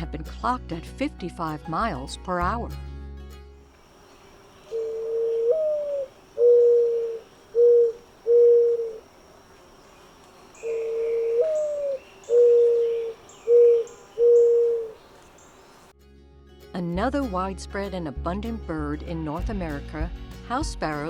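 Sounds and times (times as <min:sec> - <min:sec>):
mourning dove cooing: 0:03.8 - 0:15.9.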